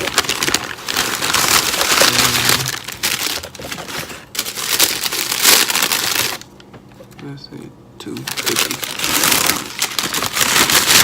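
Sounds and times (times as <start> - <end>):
food packaging crinkling: 0.0 - 6.7, 8.1 - 11.0.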